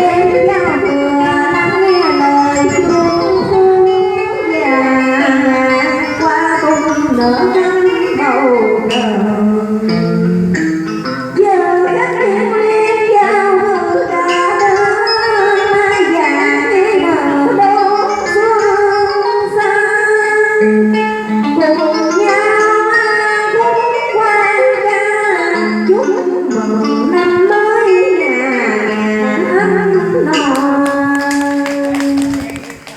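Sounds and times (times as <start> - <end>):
plucked string instruments melody: 0.0 - 24.9.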